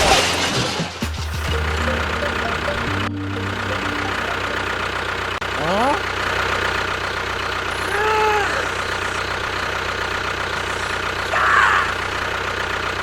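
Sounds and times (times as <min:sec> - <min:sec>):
tractor engine idling: 0:01.0 - 0:13.0
rising and falling tone: 0:01.1 - 0:05.5.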